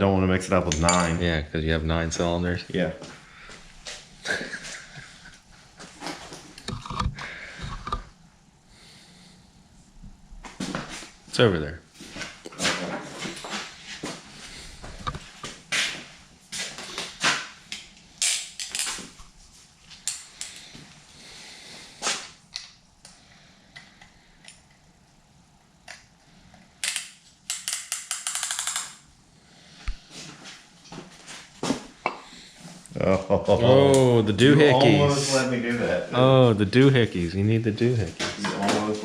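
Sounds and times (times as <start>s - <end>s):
tools and metal parts clicking: 26.8s - 29.0s.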